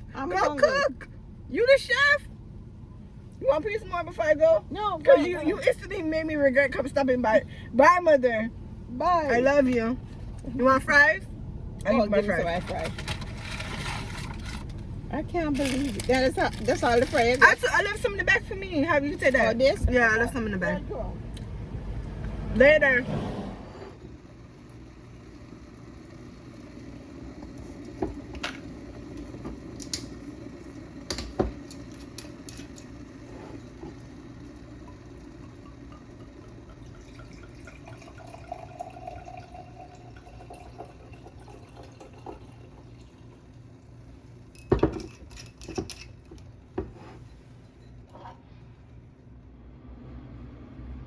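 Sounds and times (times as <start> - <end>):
liquid pouring into vessel: 23.8 - 45.1
glassware and dishes clinking: 34.9 - 42.7, 44.6 - 46.2.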